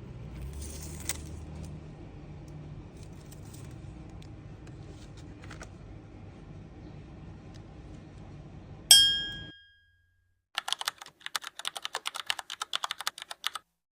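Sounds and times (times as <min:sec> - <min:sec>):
bright ding: 0:08.9 - 0:10.1
keyboard typing clicks: 0:10.6 - 0:13.6.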